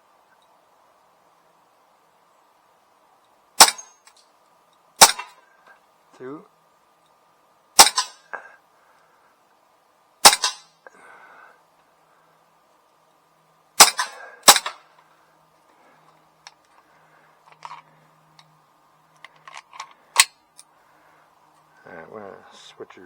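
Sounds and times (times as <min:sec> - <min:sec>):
pistol shots cracking: 0:03.6 - 0:04.0, 0:05.0 - 0:05.4, 0:07.8 - 0:08.3, 0:10.2 - 0:10.7, 0:13.8 - 0:14.8.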